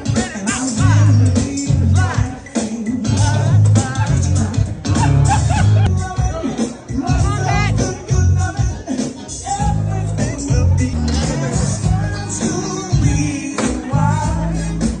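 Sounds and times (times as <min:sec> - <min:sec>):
pop music with singing: 0:00.0 - 0:15.0.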